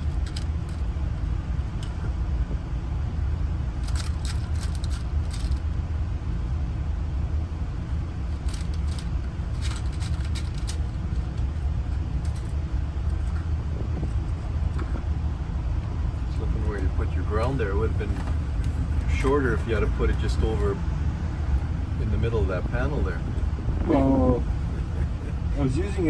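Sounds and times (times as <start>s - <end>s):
small metal lock parts clicking: 0.0s - 1.0s, 3.8s - 5.7s, 8.4s - 13.5s
steady low rumble: 0.0s - 26.0s.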